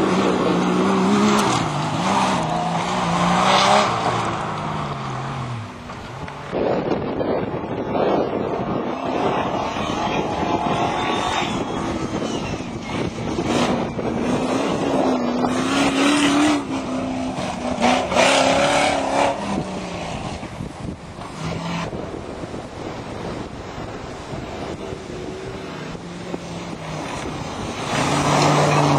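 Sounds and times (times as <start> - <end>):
engine revving hard: 0.0 - 4.4, 8.6 - 20.4
wind buffeting microphone: 5.5 - 28.9.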